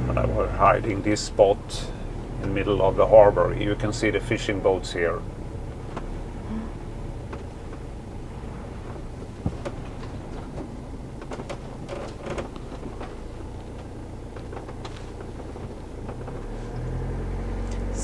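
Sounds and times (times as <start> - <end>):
engine running at low speed: 0.0 - 18.0
light clicks and rattles: 6.9 - 18.0.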